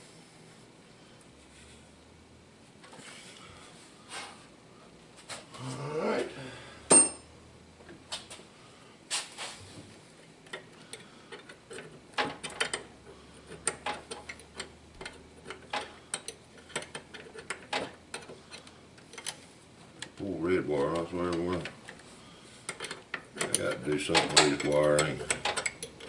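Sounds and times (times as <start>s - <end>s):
faint steady hum: 0.0s - 26.0s
clicks of hand tools: 22.7s - 26.0s.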